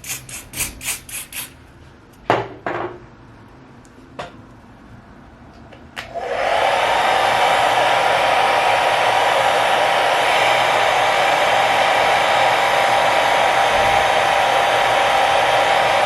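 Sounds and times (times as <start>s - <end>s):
hair dryer blowing: 6.0s - 16.0s.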